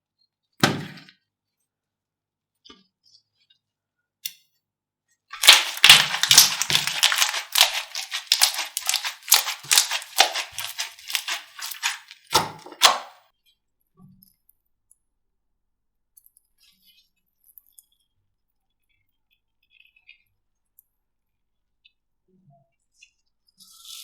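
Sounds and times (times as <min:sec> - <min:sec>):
slime crackling when squeezed: 0:05.4 - 0:13.2.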